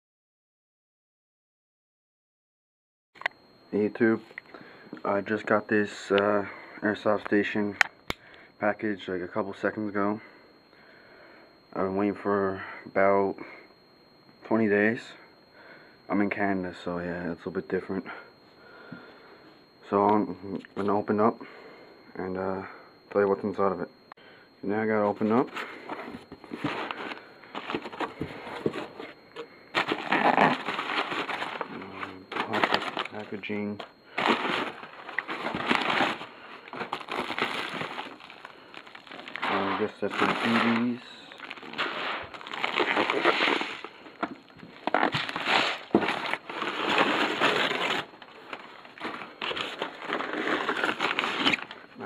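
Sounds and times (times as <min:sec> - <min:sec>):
packing rustling: 0:25.4 - 0:33.6, 0:34.2 - 0:51.9.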